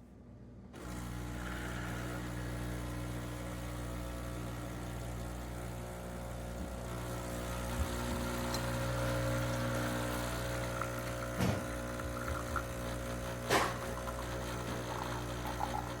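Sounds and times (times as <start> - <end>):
espresso machine humming: 0.8 - 16.0.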